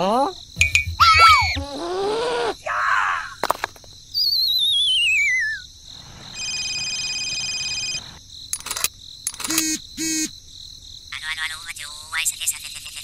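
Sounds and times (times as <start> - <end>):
sharp electronic clicks: 8.5 - 10.3.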